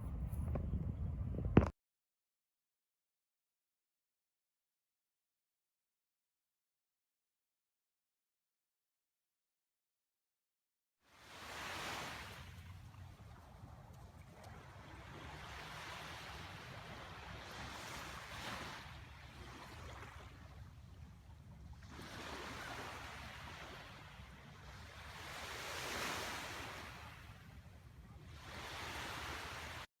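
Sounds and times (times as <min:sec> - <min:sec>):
low steady rumble: 0:00.0 - 0:01.7
small waves washing ashore: 0:11.1 - 0:29.9.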